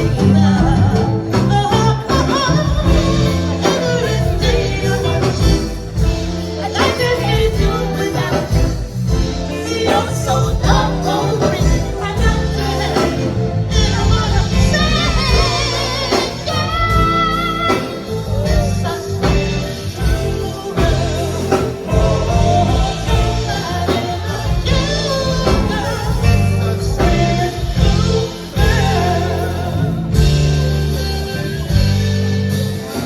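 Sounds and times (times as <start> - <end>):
bass line and band accompaniment: 0.0 - 33.0
person singing soulfully: 0.0 - 33.0.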